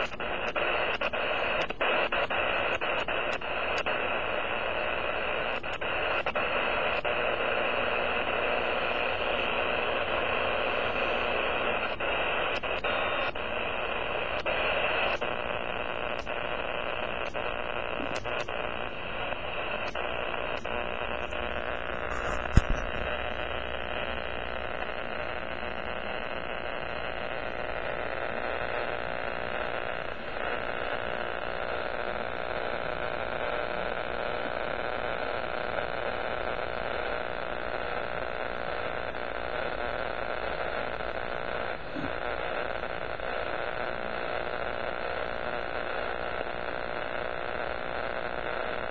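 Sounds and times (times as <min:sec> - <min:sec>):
radio static hiss: 0:00.0 - 0:48.9
loud pop: 0:22.1 - 0:23.1.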